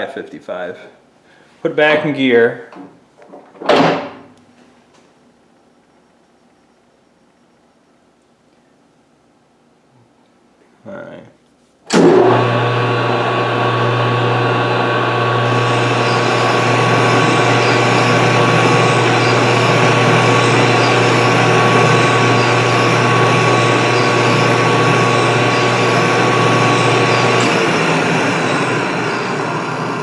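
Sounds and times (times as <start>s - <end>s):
lathe running: 11.9s - 30.0s
electric hum: 12.0s - 30.0s.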